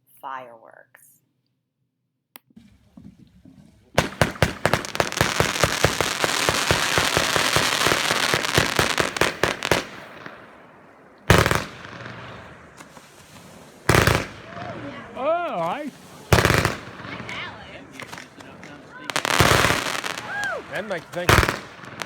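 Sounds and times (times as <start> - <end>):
loud firework bang: 4.0 - 10.6, 11.2 - 22.0
firecracker cracks: 4.0 - 22.0.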